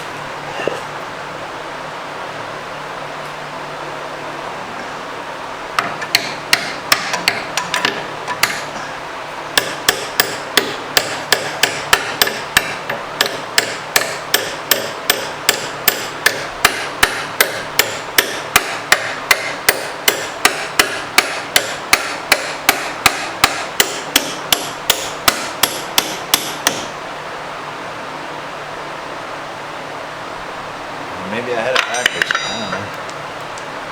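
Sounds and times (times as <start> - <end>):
hammer blows on metal: 9.6 - 26.9.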